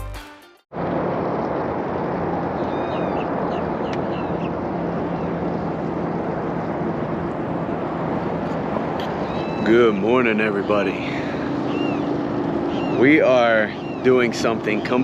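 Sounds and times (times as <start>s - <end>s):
rushing outdoor noise: 0.7s - 15.0s
bird chirps: 2.6s - 4.5s, 9.0s - 15.0s.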